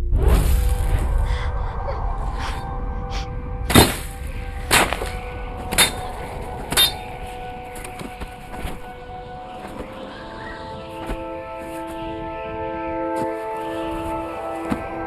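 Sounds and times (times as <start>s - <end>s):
sharp clanging hits: 3.7s - 7.2s.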